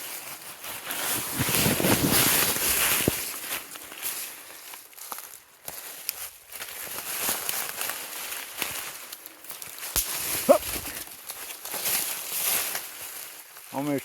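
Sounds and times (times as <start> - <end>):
footsteps in dry leaves: 0.0 - 14.0
twigs snapping: 4.7 - 13.4
short vocal sound: 10.4 - 10.8.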